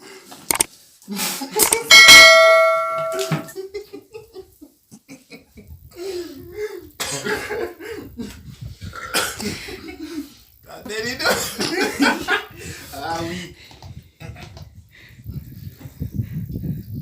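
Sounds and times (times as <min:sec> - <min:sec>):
person laughing: 0:01.4 - 0:02.1
steady high tone: 0:01.9 - 0:03.5.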